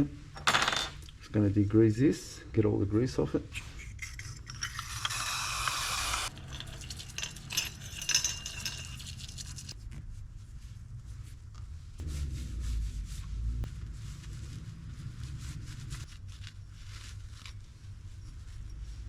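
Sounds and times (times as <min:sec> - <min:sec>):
brush scrubbing: 0:03.6 - 0:19.0
low hum: 0:06.3 - 0:19.0.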